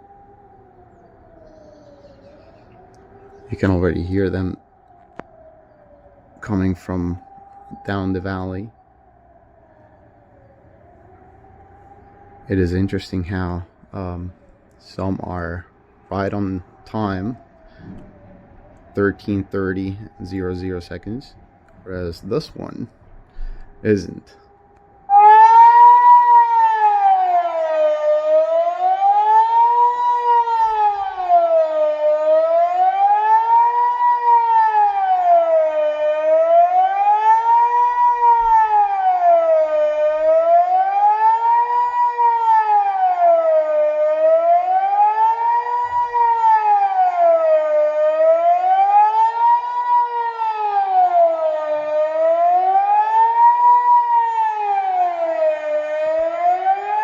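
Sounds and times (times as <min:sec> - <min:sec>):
wailing siren: 0:00.0 - 0:57.0.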